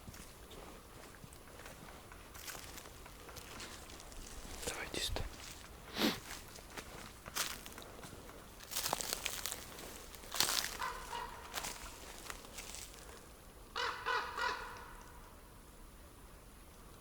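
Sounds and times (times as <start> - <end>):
footsteps through forest litter: 0.0 - 13.4
distant animal calling: 10.4 - 12.3, 13.0 - 15.3.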